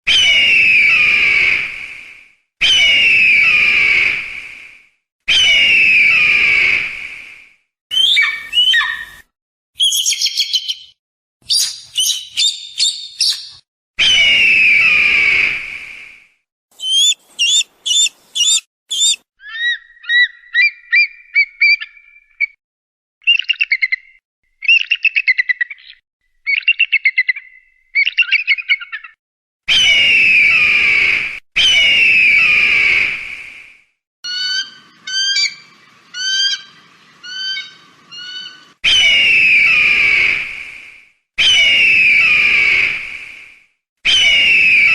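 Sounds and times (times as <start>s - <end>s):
eagle screaming: 7.9s - 9.2s, 16.8s - 20.2s, 34.3s - 40.4s
eagle chittering and trills: 16.8s - 22.0s, 34.3s - 39.8s.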